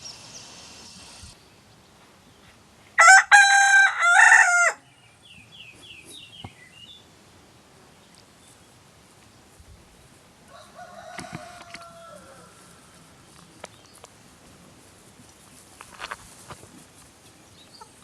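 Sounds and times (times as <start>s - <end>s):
small bird chirping: 0.0s - 1.6s, 5.0s - 7.1s
rooster crowing: 3.0s - 4.8s, 10.5s - 13.0s.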